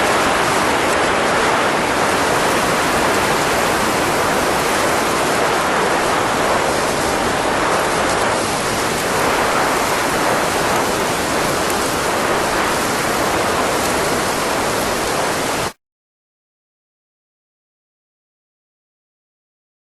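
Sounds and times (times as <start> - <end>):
rushing hiss of blowing air: 2.2 - 15.7.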